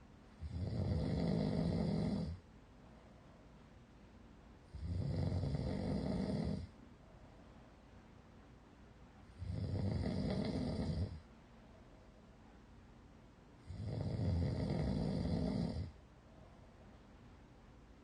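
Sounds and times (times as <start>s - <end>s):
person snoring loudly: 0.4s - 2.4s, 4.7s - 6.7s, 9.4s - 11.2s, 13.6s - 15.9s.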